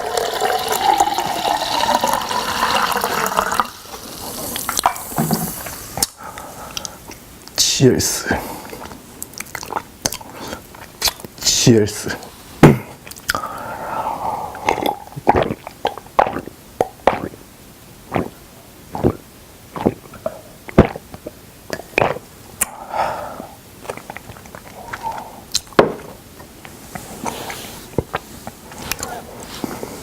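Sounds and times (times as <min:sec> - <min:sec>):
slurping or swallowing: 0:00.0 - 0:07.2, 0:08.1 - 0:30.0
wet chewing with lip smacks: 0:08.6 - 0:11.4, 0:14.7 - 0:17.4, 0:18.1 - 0:22.8, 0:23.8 - 0:29.9.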